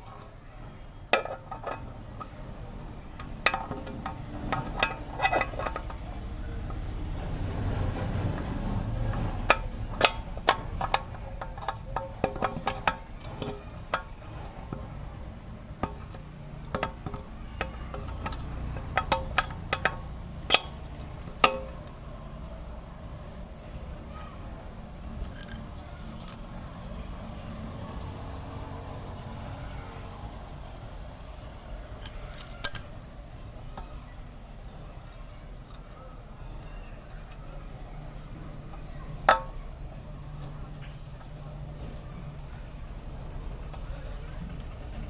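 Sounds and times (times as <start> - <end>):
metal tools clinking and knocking: 0.1 - 6.8, 8.2 - 15.0, 15.6 - 22.0, 24.8 - 26.5, 31.8 - 33.0.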